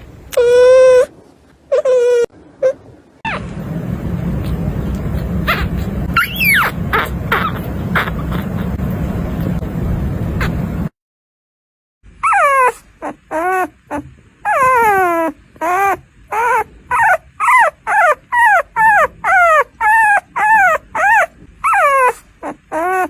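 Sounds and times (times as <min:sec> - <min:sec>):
puppy whimpering cries: 0:00.0 - 0:03.5, 0:05.2 - 0:08.8, 0:12.2 - 0:23.0.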